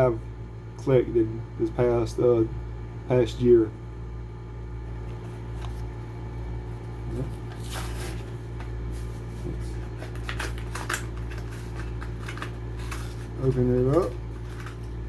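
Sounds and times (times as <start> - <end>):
steady low hum: 0.0 - 15.0
plastic packaging rustling: 7.2 - 15.0.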